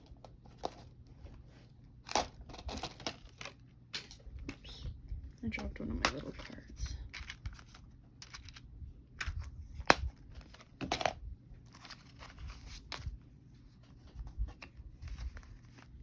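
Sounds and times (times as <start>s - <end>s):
paper rustling: 11.6s - 16.0s.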